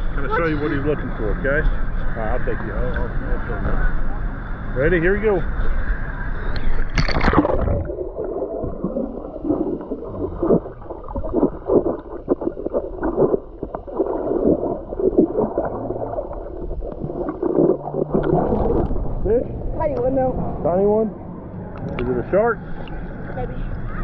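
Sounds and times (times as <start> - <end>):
underwater bubbling and gurgling: 0.0 - 20.6, 21.2 - 24.0
water splash: 6.8 - 19.4.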